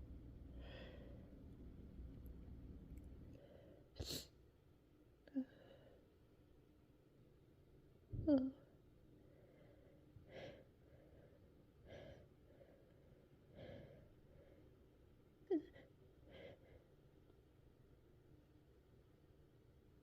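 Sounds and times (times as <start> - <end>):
woman breathing softly: 0.5 - 1.5, 9.2 - 14.8, 15.7 - 17.0.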